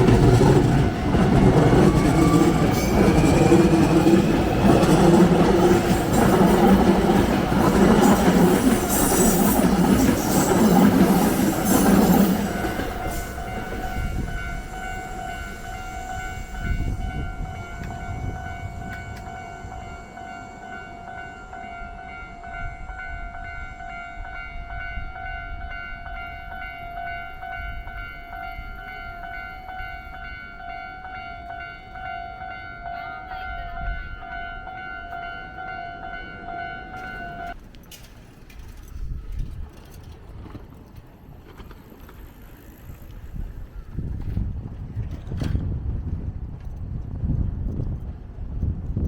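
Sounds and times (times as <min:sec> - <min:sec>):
crossing warning bell ringing: 0:00.0 - 0:38.2
train passing with wheel clicks: 0:00.0 - 0:49.0.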